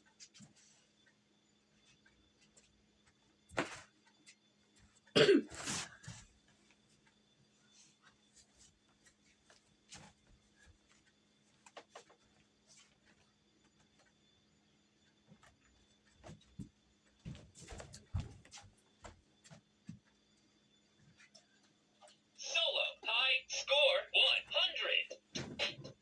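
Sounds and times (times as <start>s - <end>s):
person coughing: 5.2s - 5.6s.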